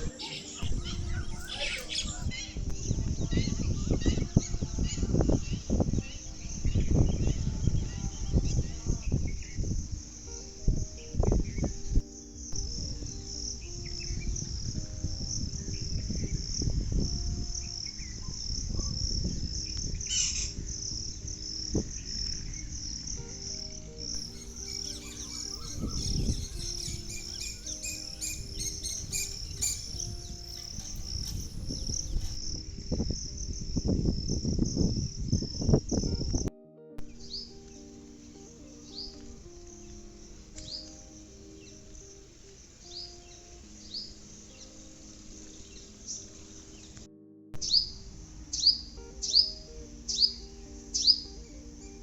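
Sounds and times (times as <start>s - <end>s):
birds chirping: 0.0s - 36.1s, 37.1s - 52.0s
high insect trill: 0.0s - 36.4s
soft background music: 0.0s - 52.0s.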